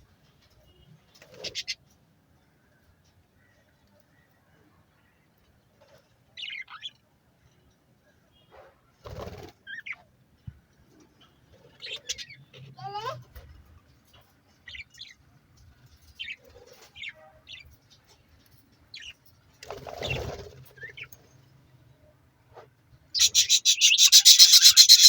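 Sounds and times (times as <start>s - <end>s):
budgerigars chirping: 23.2s - 25.0s
warbled bird call: 23.2s - 25.0s.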